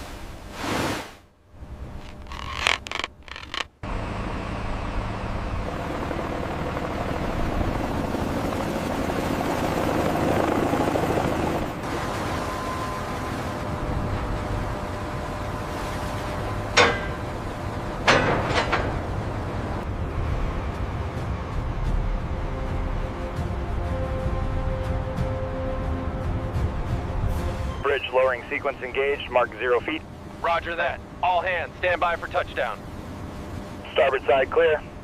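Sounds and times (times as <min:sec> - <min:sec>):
lifting machinery rumble: 0:10.4 - 0:35.0.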